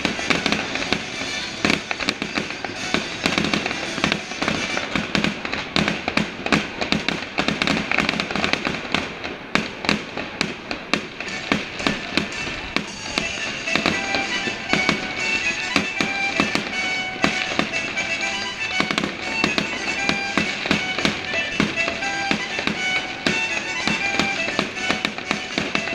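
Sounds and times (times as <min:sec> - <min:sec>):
music playing: 0:00.0 - 0:05.5, 0:11.2 - 0:25.9
fireworks exploding: 0:00.0 - 0:25.9.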